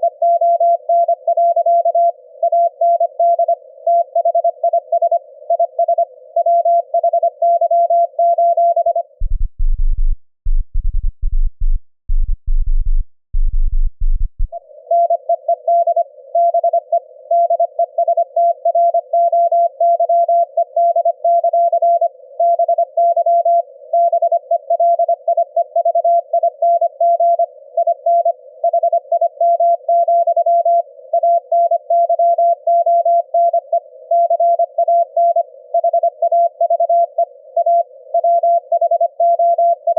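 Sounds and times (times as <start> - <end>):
very low buzz: 9.2 - 14.6.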